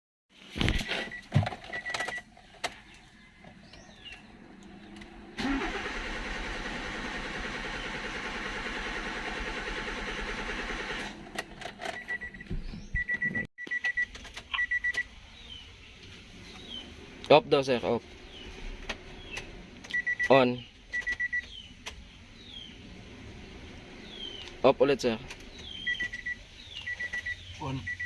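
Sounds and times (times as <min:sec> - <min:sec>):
starter cranking engine: 0:05.4 - 0:12.0
high electronic beeps: 0:12.0 - 0:15.0, 0:19.9 - 0:20.3, 0:25.7 - 0:28.0.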